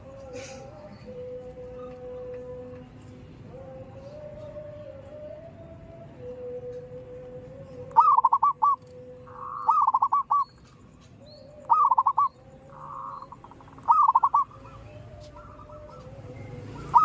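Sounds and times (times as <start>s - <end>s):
dove cooing: 6.2s - 17.0s.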